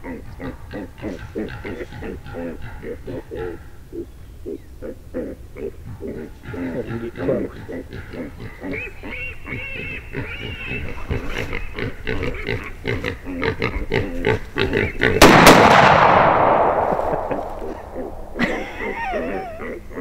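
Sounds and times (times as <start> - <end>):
hog grunting and squealing: 0.0 - 15.2, 17.7 - 20.0
loud shotgun blast: 15.2 - 18.4.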